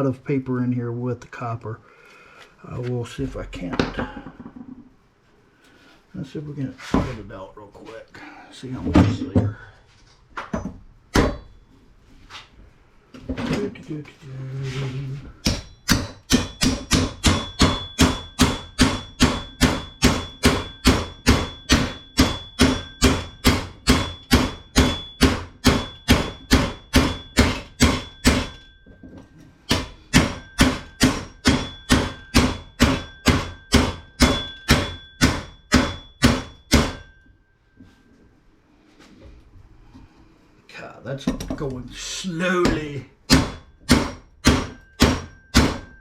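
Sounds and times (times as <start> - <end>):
machete striking wire: 15.4 - 28.8, 29.7 - 37.2, 42.8 - 46.0.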